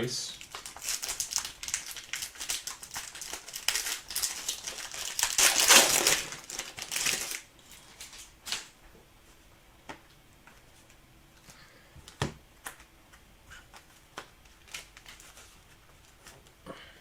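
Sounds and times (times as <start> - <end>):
foil wrapper crinkling: 0.3 - 8.7, 13.8 - 16.4.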